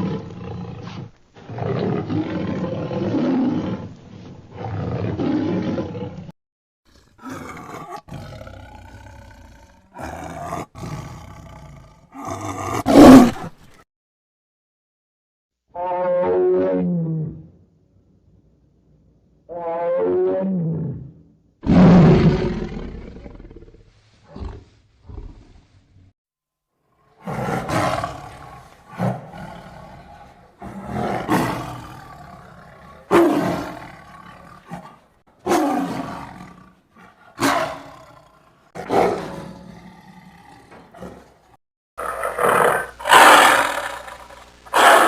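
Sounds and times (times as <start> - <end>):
tiger roaring: 0.0 - 3.9, 4.5 - 6.3, 6.9 - 13.5, 19.5 - 25.6, 27.0 - 45.0
tiger growls: 0.0 - 6.3, 6.9 - 13.8, 19.6 - 26.1, 27.0 - 45.0.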